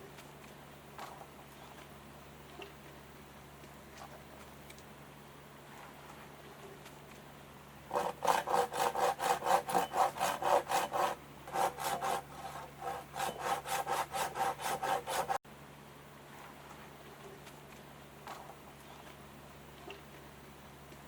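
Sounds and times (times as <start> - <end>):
hand saw cutting wood: 7.9 - 15.4.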